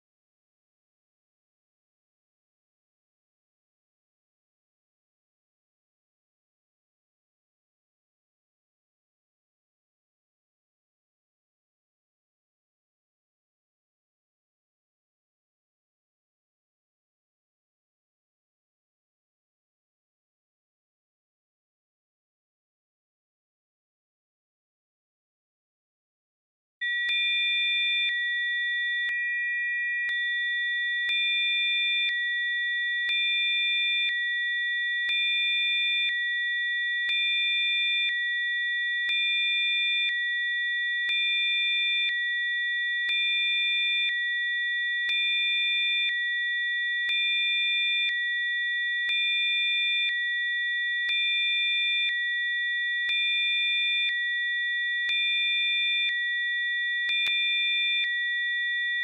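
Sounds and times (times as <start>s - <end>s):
steady high-pitched sine tones: 26.8s - 39.1s.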